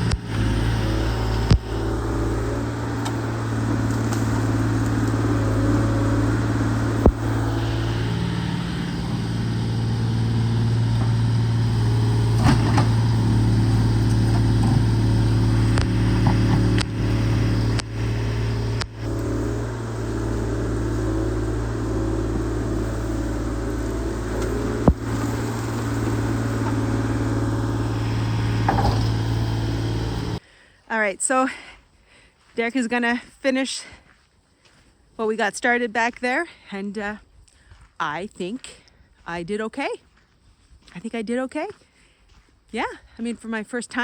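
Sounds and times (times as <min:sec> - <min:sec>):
excavator diesel engine: 0:00.0 - 0:30.4.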